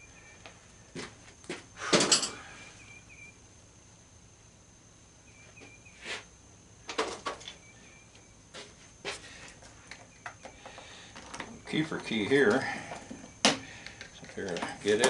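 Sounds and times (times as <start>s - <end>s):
tools and parts clattering: 1.9s - 2.4s, 12.4s - 15.0s.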